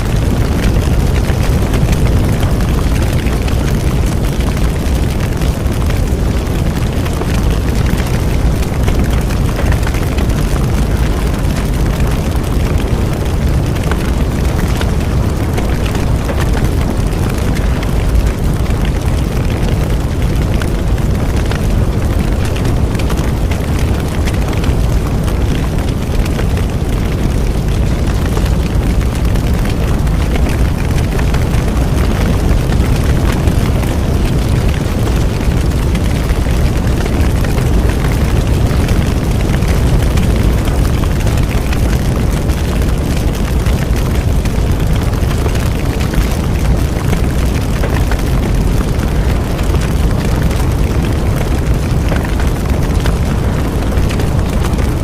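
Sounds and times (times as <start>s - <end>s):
fire crackling and popping: 0.0s - 55.0s
rush of bonfire flames: 0.0s - 55.0s.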